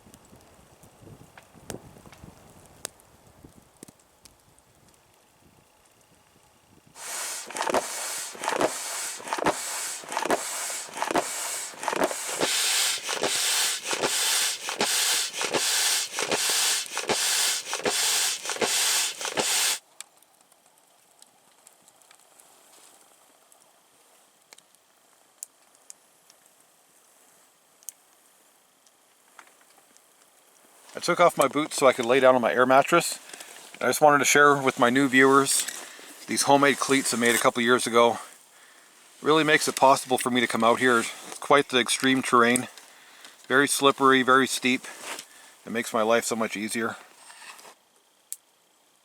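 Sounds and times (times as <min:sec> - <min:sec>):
air pump strokes: 0:07.0 - 0:19.8, 0:33.2 - 0:38.2, 0:39.1 - 0:42.8, 0:43.7 - 0:45.3.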